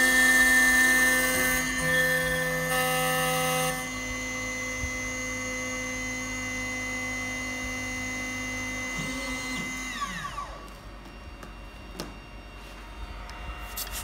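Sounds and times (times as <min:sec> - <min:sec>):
milling machine spindle whining: 0:00.0 - 0:10.7.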